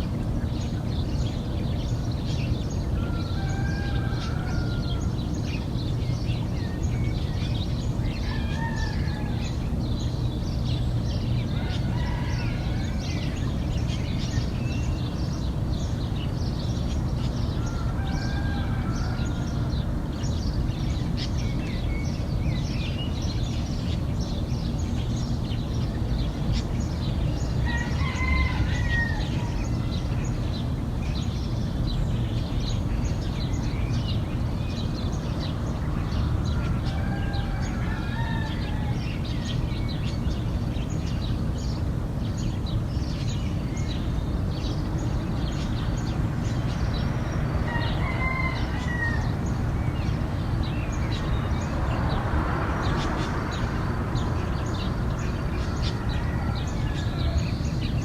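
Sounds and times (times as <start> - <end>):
low background rumble: 0.0 - 58.0
small birds chirping: 0.0 - 58.0
rooster crowing: 3.0 - 5.2, 8.1 - 9.8, 11.4 - 13.5, 17.5 - 19.9, 27.5 - 30.2, 36.0 - 39.6, 46.5 - 50.1, 54.6 - 58.0.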